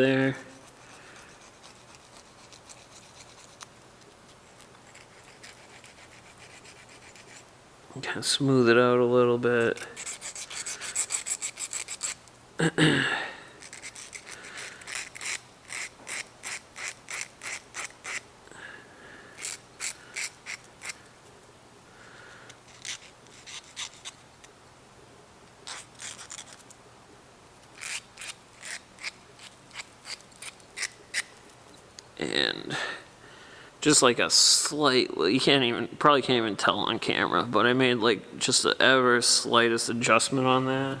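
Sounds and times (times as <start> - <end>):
hand file rasping on metal: 0.5 - 3.7, 4.9 - 7.4, 9.7 - 12.2, 13.6 - 18.2, 19.4 - 21.0.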